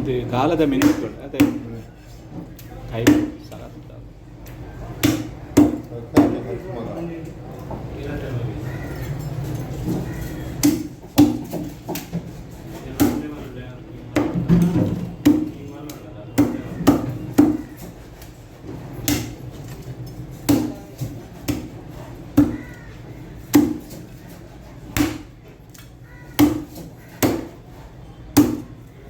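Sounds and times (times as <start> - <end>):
knife chopping fish: 10.1 - 12.3, 15.2 - 18.3, 19.0 - 19.4, 20.5 - 24.3, 24.9 - 27.7, 28.4 - 28.8.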